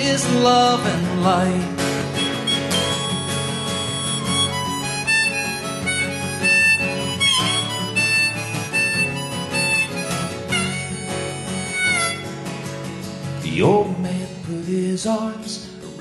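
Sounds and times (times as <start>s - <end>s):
acoustic guitar: 0.0s - 16.0s
harmonica melody: 1.8s - 12.7s.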